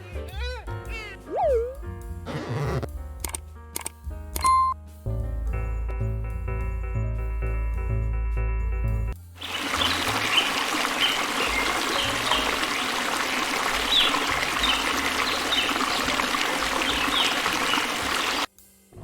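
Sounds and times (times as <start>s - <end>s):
running water: 9.4s - 18.5s.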